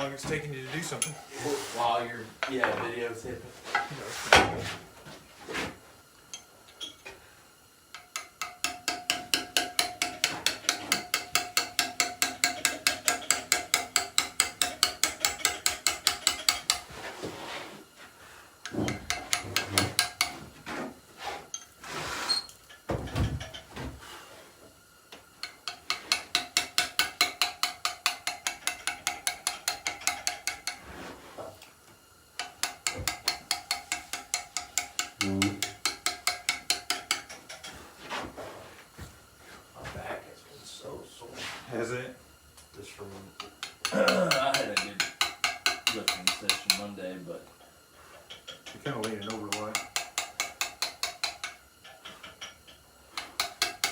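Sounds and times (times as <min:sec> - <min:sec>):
mallet tapping chisel on stone: 0:08.0 - 0:16.9, 0:18.7 - 0:20.4, 0:25.4 - 0:30.8, 0:32.4 - 0:37.8, 0:43.4 - 0:46.9, 0:48.3 - 0:53.9.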